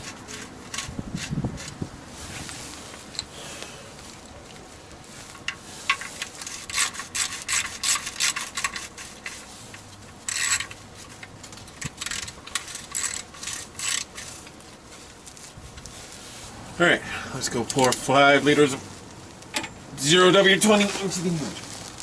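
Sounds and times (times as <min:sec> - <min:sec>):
ratchet wrench rasping: 0:05.9 - 0:14.5.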